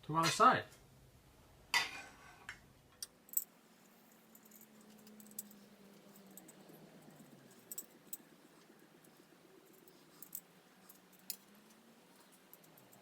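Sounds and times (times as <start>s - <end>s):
metal parts clicking and clinking: 3.0s - 13.0s.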